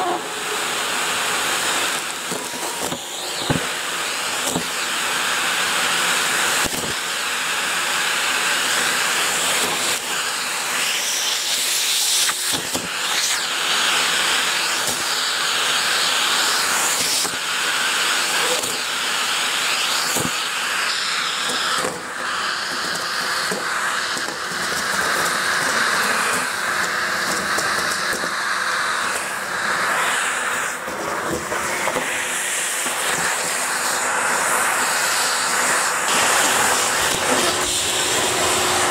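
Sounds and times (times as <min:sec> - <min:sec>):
vacuum cleaner running: 0:00.0 - 0:38.9.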